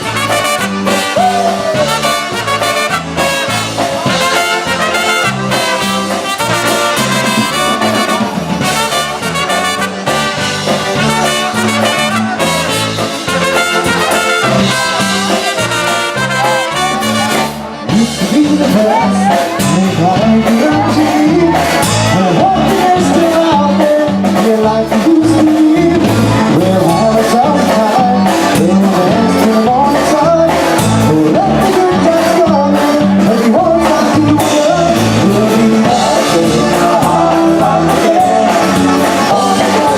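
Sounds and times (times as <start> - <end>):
person singing: 0.0 - 3.0, 10.9 - 39.9
polka band playing: 0.0 - 39.9.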